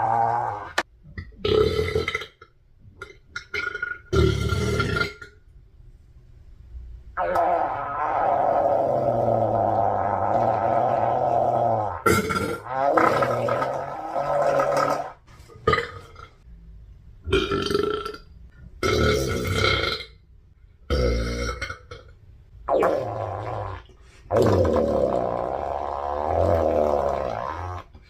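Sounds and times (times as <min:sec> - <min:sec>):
person burping: 0:01.4 - 0:02.4, 0:07.2 - 0:16.3, 0:17.3 - 0:18.2, 0:18.8 - 0:20.2, 0:20.9 - 0:22.1, 0:22.7 - 0:27.9.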